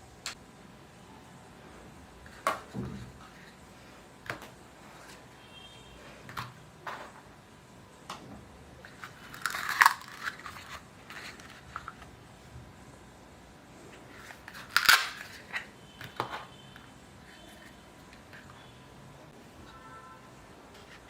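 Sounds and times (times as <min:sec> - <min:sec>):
packaging rustling: 0:08.8 - 0:12.1
packaging crinkling: 0:08.9 - 0:12.0, 0:14.3 - 0:15.7.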